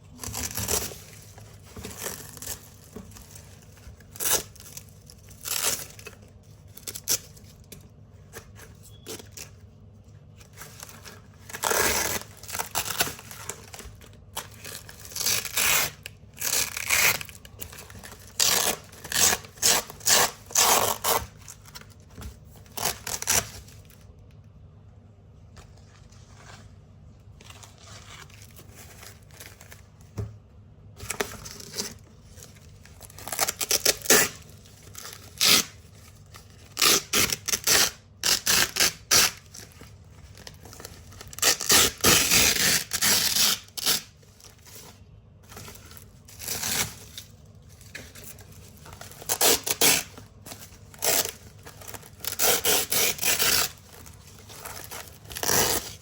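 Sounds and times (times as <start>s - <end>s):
velcro strips ripping: 14.6s - 17.5s, 18.2s - 21.3s, 33.1s - 34.4s, 35.0s - 35.8s, 36.8s - 39.5s, 41.2s - 44.1s, 49.2s - 50.1s, 50.9s - 56.0s.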